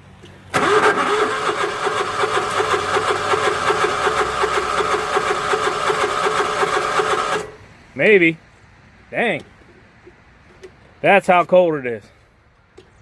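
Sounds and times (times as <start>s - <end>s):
mower engine cranking: 0.5s - 7.6s.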